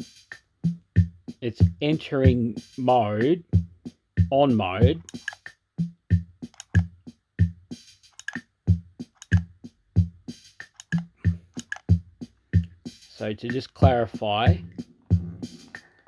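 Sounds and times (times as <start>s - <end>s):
hi-hat and snare hits: 0.0s - 2.0s, 4.2s - 14.6s.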